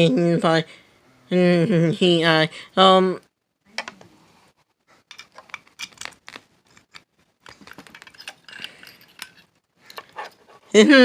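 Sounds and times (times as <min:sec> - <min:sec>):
objects clicking and rattling: 0:05.0 - 0:10.5.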